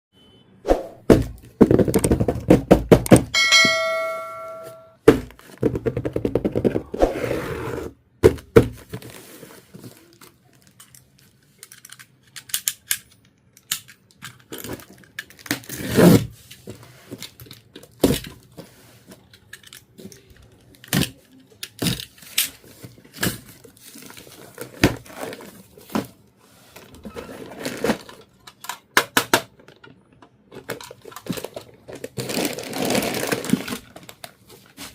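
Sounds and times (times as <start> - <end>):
short bright chime: 3.4 - 5.0
plastic toy pieces tapping and clicking: 10.3 - 15.6, 19.2 - 22.6.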